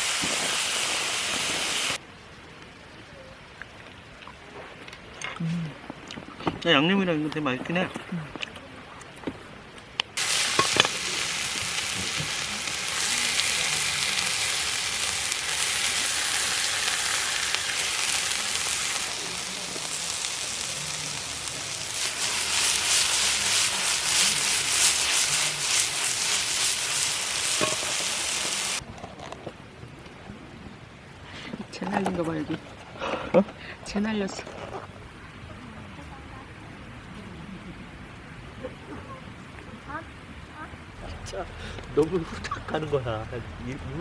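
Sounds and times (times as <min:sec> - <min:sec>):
meat sizzling on a grill: 0:00.0 - 0:02.0, 0:10.2 - 0:28.8
campfire crackling: 0:00.0 - 0:02.8, 0:10.0 - 0:28.9.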